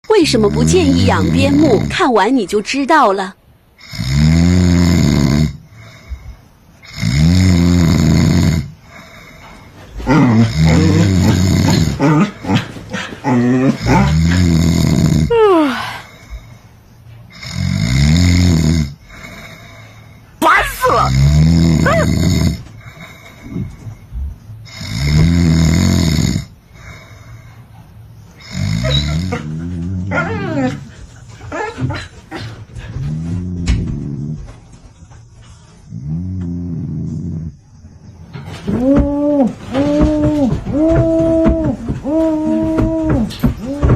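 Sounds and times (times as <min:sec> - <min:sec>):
dog vocal noises: 0:00.0 - 0:02.1, 0:06.9 - 0:15.8, 0:20.4 - 0:27.0, 0:28.4 - 0:37.6, 0:38.3 - 0:43.9
person snoring: 0:03.8 - 0:09.4, 0:10.1 - 0:12.1, 0:13.3 - 0:16.6, 0:17.3 - 0:23.9, 0:24.7 - 0:27.5, 0:28.4 - 0:30.1, 0:35.9 - 0:37.6
quiet breathing: 0:05.5 - 0:07.1, 0:08.0 - 0:10.0, 0:15.6 - 0:17.8, 0:18.9 - 0:20.4, 0:22.6 - 0:25.1, 0:26.4 - 0:28.7.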